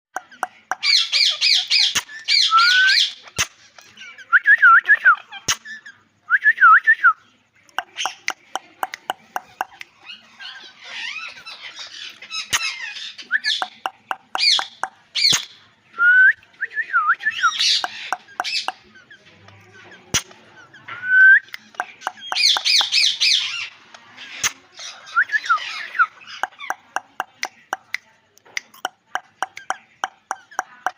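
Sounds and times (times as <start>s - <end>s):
parrot calling: 0.2s - 4.3s, 7.8s - 15.6s, 17.3s - 19.1s, 21.6s - 27.5s.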